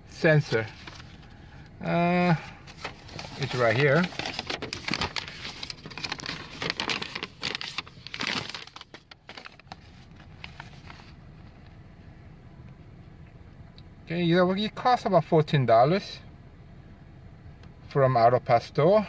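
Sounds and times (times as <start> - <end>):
handling clicks and rustles: 2.6 - 11.8.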